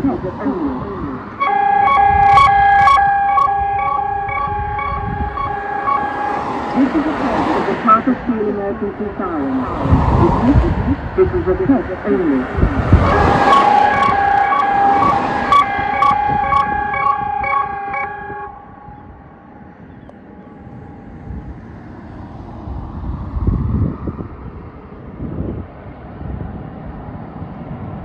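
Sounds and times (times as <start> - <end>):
two-tone emergency siren: 0.0 - 21.8
wind gusts: 0.0 - 28.0.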